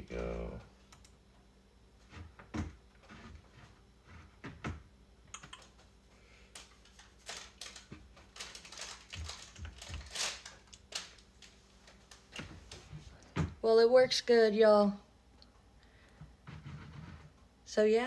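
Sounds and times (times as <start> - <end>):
computer keyboard typing: 0.9 - 1.2, 5.4 - 5.8.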